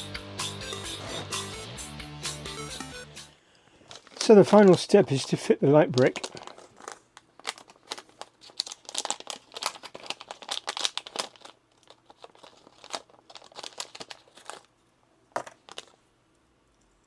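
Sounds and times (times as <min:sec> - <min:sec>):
plastic bricks crackling and clicking: 0:03.9 - 0:05.3, 0:05.9 - 0:14.7, 0:15.3 - 0:16.0.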